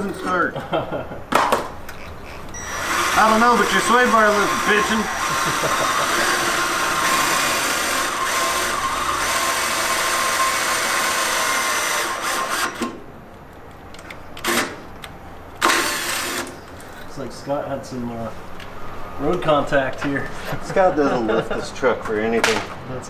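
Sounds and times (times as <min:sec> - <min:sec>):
power drill boring through steel: 0:02.5 - 0:12.9.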